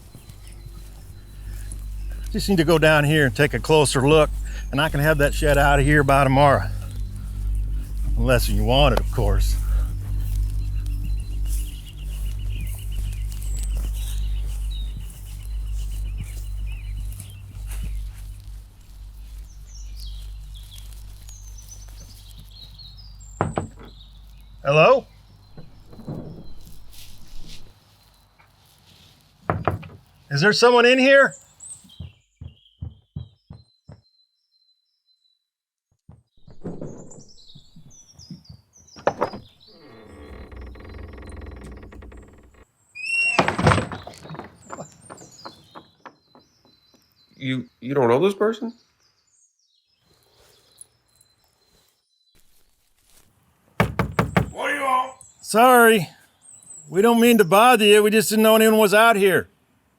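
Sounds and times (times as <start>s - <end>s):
door creaking: 0.0s - 12.9s, 23.4s - 24.1s, 39.0s - 46.4s, 53.8s - 55.0s
low outdoor rumble: 0.0s - 25.3s
small birds chirping: 0.0s - 29.3s, 30.0s - 35.5s, 36.4s - 52.6s, 53.8s - 59.5s
door banging: 23.4s - 24.0s, 43.2s - 46.5s, 53.8s - 54.6s
knocks and scraping on door: 23.4s - 24.0s, 29.5s - 30.0s, 32.0s - 34.0s, 36.1s - 42.6s, 43.3s - 46.8s, 53.8s - 54.6s.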